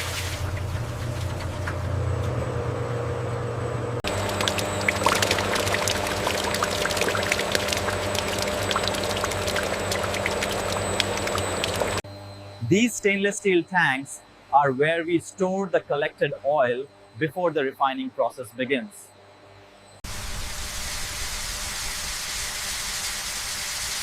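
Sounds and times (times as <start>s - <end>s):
liquid pouring and splashing: 0.0s - 1.6s, 4.0s - 12.0s
low machine hum: 0.0s - 23.7s.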